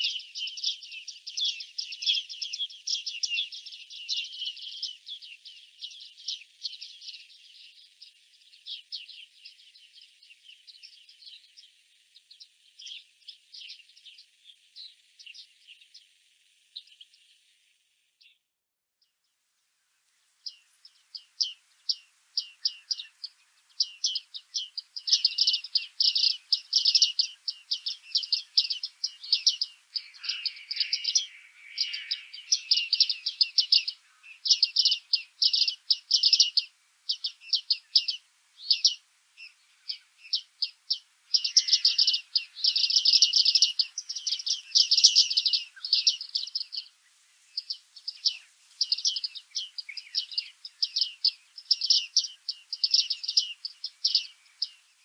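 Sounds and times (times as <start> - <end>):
birds ticking calls: 0.0 - 7.7, 20.4 - 55.0.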